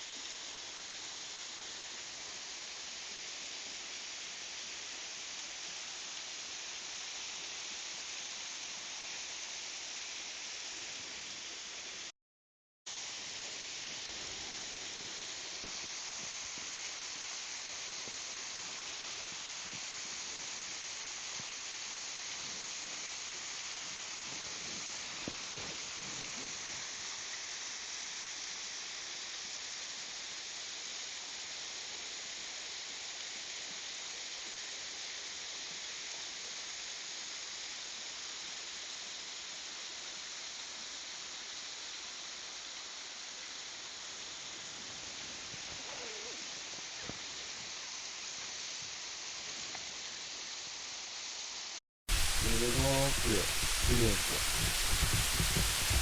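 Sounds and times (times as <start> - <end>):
waterfall rushing: 52.1 - 56.0.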